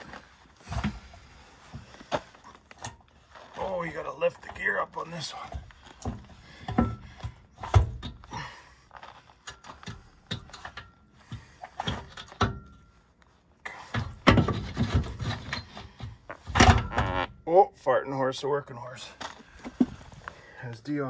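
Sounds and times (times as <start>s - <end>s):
metal knocks clanks and scraping: 13.8s - 17.0s.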